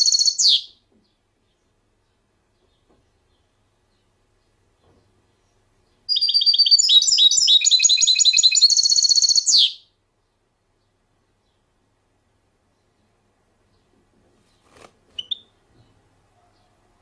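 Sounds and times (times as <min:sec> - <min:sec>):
songbird trilling: 0:00.0 - 0:00.7, 0:06.1 - 0:09.8.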